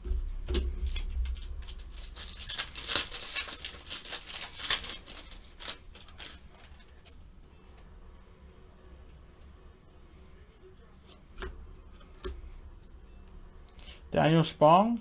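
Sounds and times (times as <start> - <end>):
cards and packaging rustling: 0.2 - 8.0.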